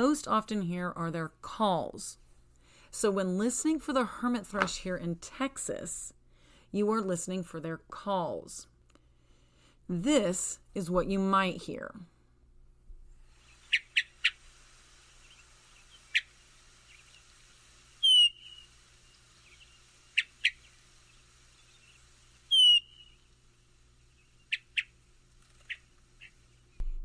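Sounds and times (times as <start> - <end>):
thrush call sliding down: 13.2 - 23.3.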